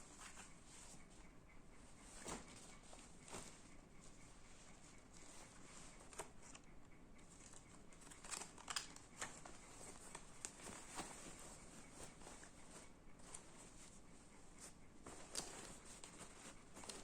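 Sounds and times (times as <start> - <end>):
package rustling and clicking: 8.0 - 11.1.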